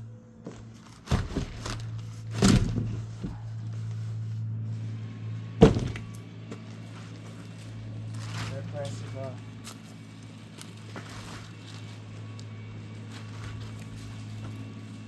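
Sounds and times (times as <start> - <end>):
steady low hum: 0.0 - 15.0
plastic wrap rustling: 9.7 - 14.8.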